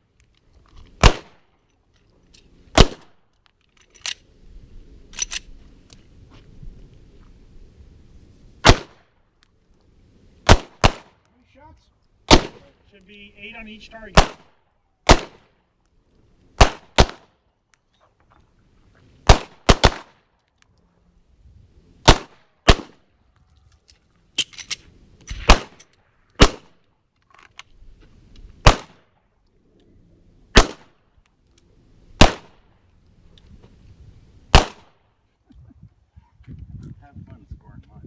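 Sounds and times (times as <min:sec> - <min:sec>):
pistol shots: 0:01.0 - 0:01.4, 0:02.7 - 0:03.2, 0:08.6 - 0:09.0, 0:10.5 - 0:11.2, 0:12.3 - 0:12.7, 0:14.1 - 0:15.5, 0:16.6 - 0:17.3, 0:19.2 - 0:20.2, 0:22.0 - 0:23.0, 0:25.4 - 0:25.8, 0:26.4 - 0:26.8, 0:28.6 - 0:29.1, 0:30.5 - 0:31.0, 0:32.2 - 0:32.6, 0:34.5 - 0:35.0.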